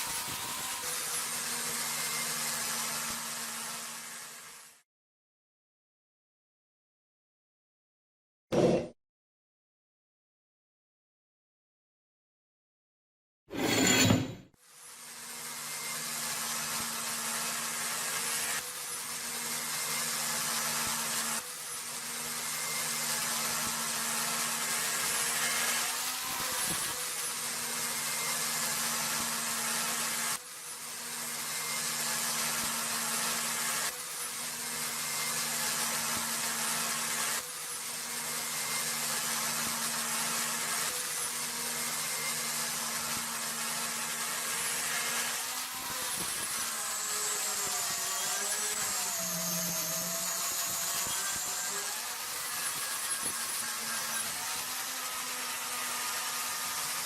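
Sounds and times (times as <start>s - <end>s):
electric power tool running: 0.0s - 4.8s, 15.1s - 57.0s.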